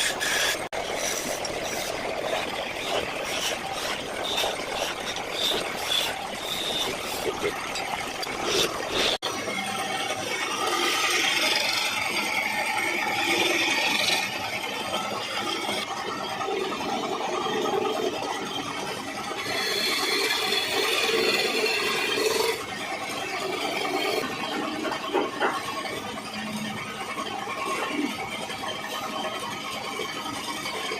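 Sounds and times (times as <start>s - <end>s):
tool scraping spinning wood: 0.0s - 9.3s, 19.1s - 28.3s.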